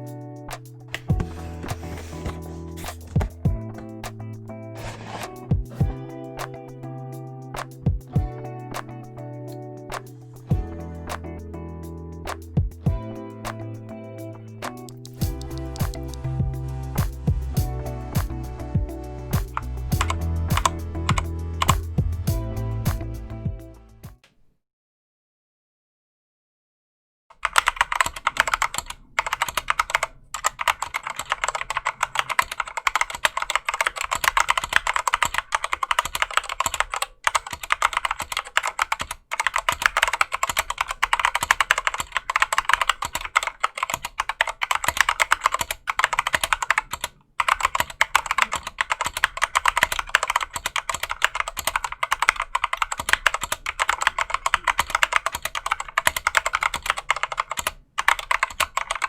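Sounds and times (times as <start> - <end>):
fast mechanical keyboard typing: 14.7 - 16.2, 19.4 - 22.0, 27.4 - 59.0.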